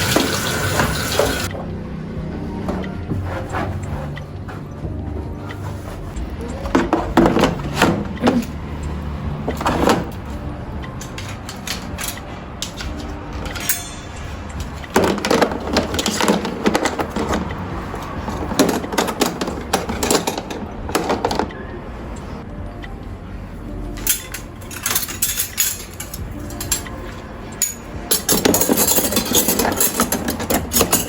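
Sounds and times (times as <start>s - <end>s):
knocks and clicks of handling: 14.5s - 21.5s.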